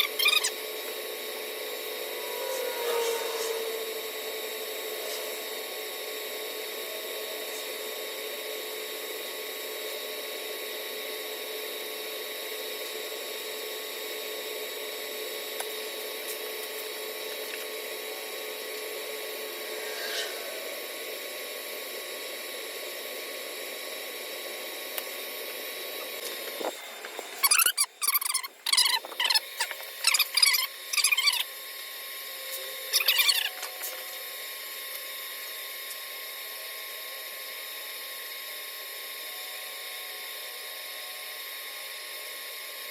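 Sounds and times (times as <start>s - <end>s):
faint whining tones: 0.0s - 42.9s
welding arc hissing: 18.7s - 21.3s, 26.2s - 31.6s, 32.4s - 34.8s.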